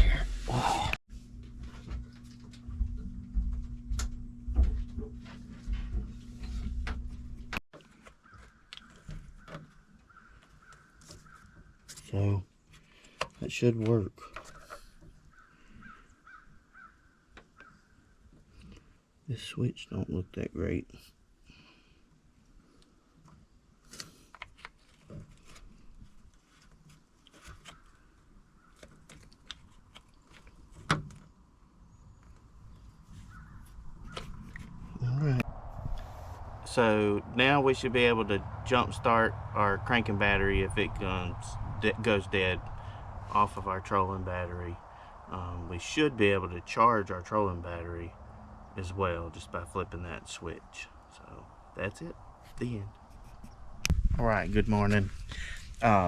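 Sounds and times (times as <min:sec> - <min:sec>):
steady low hum: 0:00.0 - 0:07.6, 0:32.3 - 0:56.0.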